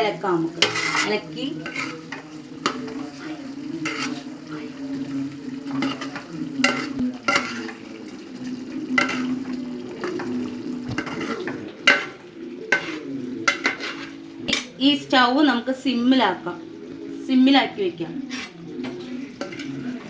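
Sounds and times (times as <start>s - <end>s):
spoon scraping and knocking pot: 0.5s - 3.2s, 3.8s - 4.3s, 5.7s - 7.8s, 9.0s - 14.8s, 18.2s - 20.0s.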